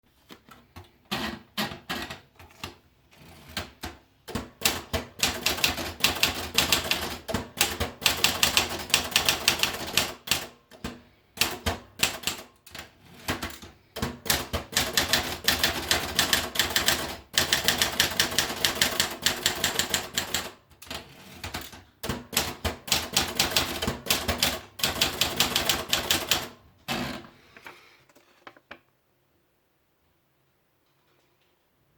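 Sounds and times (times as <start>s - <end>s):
typewriter keystrokes: 3.6s - 27.1s.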